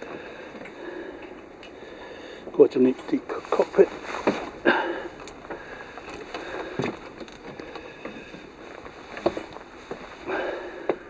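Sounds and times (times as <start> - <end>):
footsteps on boat deck: 3.0 - 11.0.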